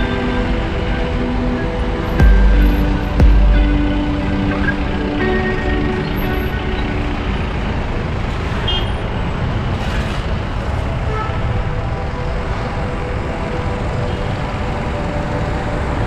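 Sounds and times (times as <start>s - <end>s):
road traffic noise: 0.0s - 16.0s.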